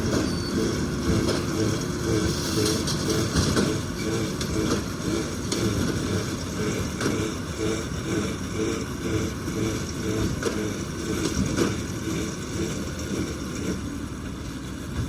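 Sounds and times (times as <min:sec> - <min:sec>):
farm machinery engine running: 0:00.0 - 0:15.0.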